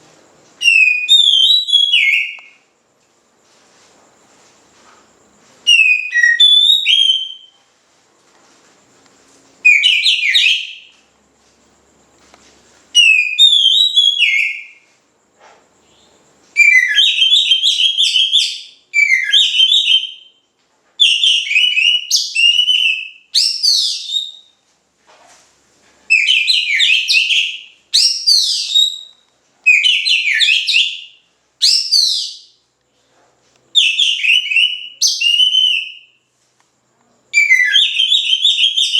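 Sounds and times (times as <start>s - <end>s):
songbird whistling: 0.6s - 2.6s, 5.6s - 7.6s, 9.6s - 11.0s, 13.0s - 14.9s, 15.9s - 20.4s, 21.0s - 24.6s, 26.1s - 32.6s, 33.8s - 36.2s, 37.4s - 38.9s.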